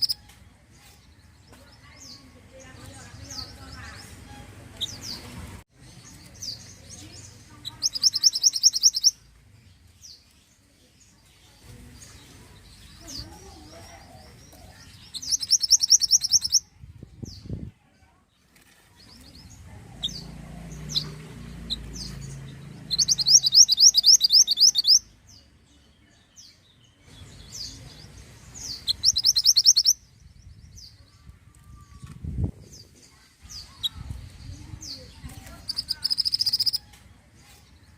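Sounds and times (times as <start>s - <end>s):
bird high-pitched trills: 0.0s - 0.4s, 7.6s - 9.2s, 15.0s - 16.6s, 22.8s - 25.1s, 28.6s - 30.0s, 35.6s - 36.9s
soft bird chirps: 0.0s - 37.9s.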